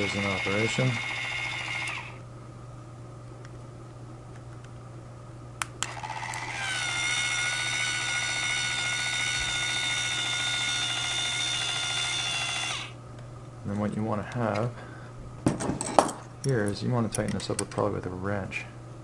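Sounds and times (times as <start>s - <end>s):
electric gear motor whine: 0.0s - 2.2s, 5.8s - 13.0s.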